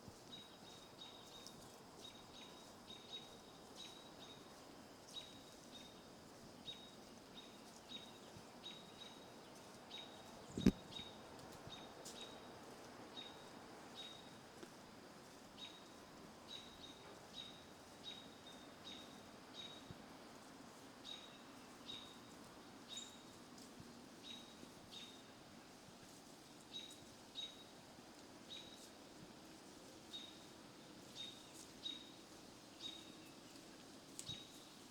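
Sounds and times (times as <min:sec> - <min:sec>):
bird chirping: 0:09.9 - 0:11.1.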